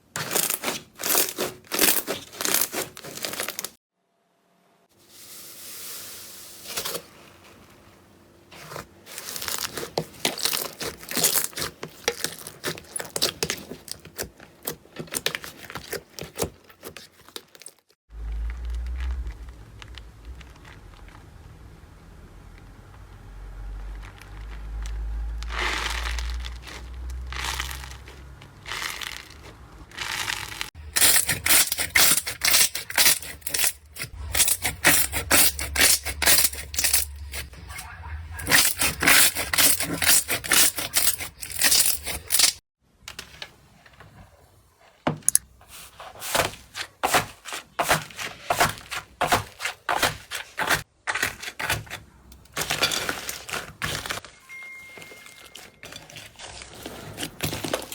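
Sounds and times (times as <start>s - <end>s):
slime squishing by hand: 0.1s - 3.8s, 8.6s - 17.3s, 55.5s - 57.9s.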